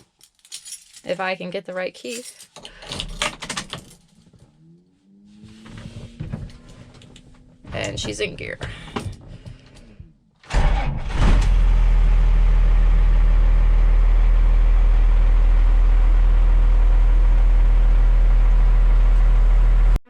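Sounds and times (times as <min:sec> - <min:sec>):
diesel engine running: 0:04.0 - 0:20.0.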